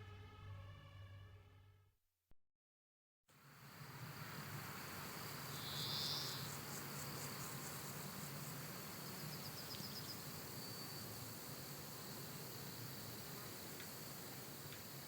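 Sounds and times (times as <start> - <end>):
insects chirping: 3.4 - 15.0.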